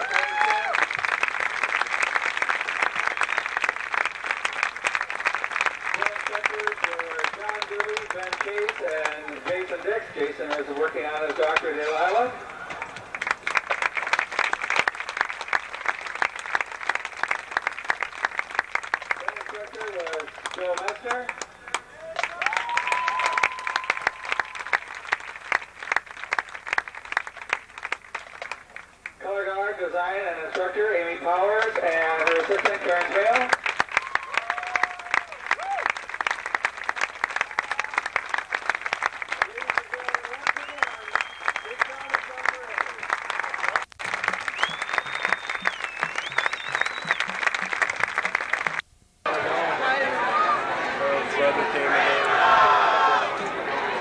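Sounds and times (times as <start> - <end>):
audience clapping: 0.0 - 29.2, 30.5 - 54.0
long high whistle: 22.6 - 24.9, 44.5 - 47.3.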